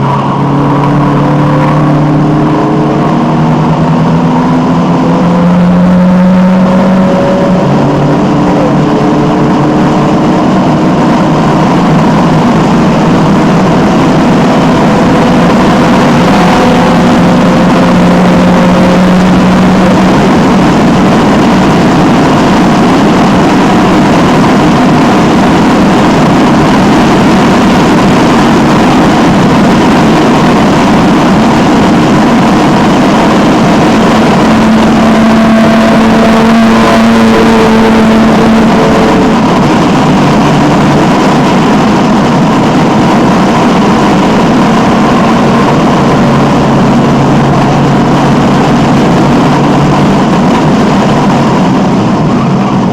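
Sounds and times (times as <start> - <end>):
car engine running hard: 0.0 - 52.9.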